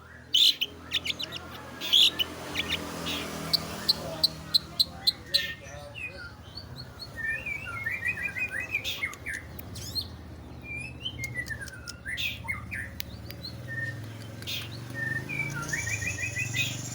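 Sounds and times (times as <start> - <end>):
bird singing: 0.0 - 16.9
bird clicking notes: 11.2 - 16.7
swooping whistles: 15.0 - 16.9.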